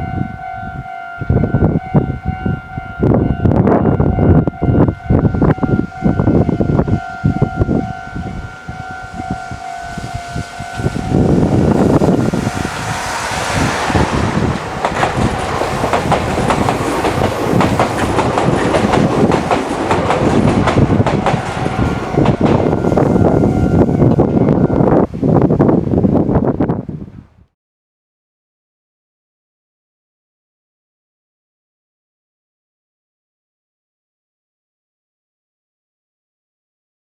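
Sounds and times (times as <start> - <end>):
steady high ringing tone: 0.0 - 12.7, 21.5 - 25.1
electric train passing: 0.0 - 26.2
wheels clattering over rail joints: 10.8 - 24.2.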